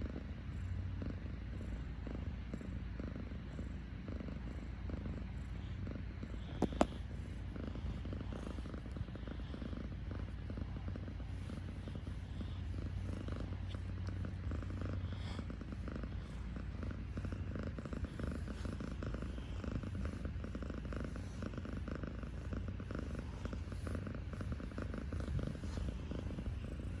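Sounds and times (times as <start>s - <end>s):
kitten purring: 0.0s - 27.0s.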